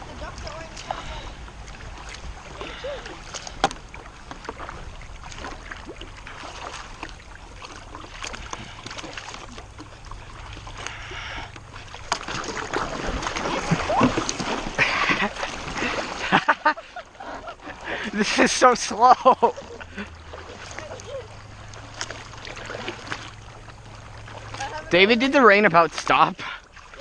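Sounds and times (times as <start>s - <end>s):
paddle splashing in water: 0.0s - 27.0s.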